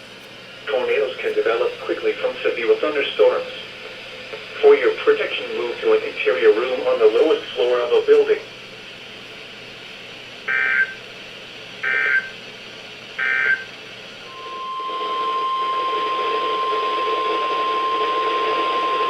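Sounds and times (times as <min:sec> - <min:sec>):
radio hiss: 0:00.4 - 0:19.0
steady warning alarm tone: 0:10.5 - 0:11.0, 0:11.8 - 0:12.4, 0:13.2 - 0:19.0
data tone screech bursts: 0:11.8 - 0:12.3, 0:14.3 - 0:19.0.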